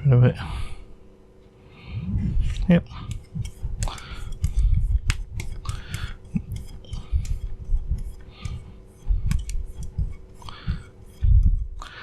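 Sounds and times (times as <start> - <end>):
sharp clicks and low knocks: 3.0 - 11.8
chisel scraping on sharpening stone: 3.1 - 12.0.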